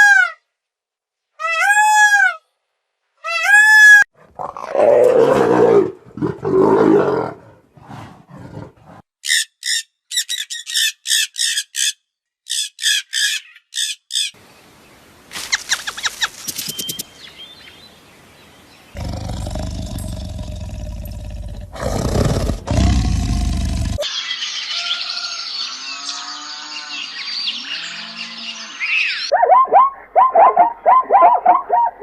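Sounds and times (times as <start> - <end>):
high arching animal calls: 18.9 - 32.0
rough growls: 19.0 - 24.0.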